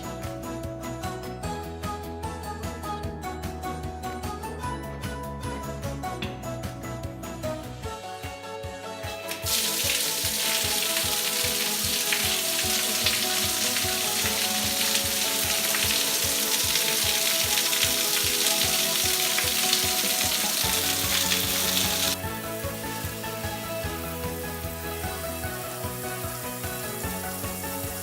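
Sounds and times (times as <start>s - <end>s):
background music with steady beat: 0.0s - 28.0s
shower water spraying: 9.3s - 28.0s.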